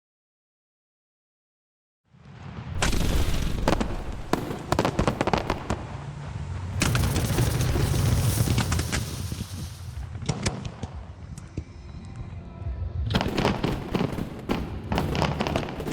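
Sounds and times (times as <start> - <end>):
fireworks low rumble: 2.1 - 15.9
fireworks cracking and crackling: 2.2 - 11.4, 13.1 - 15.9.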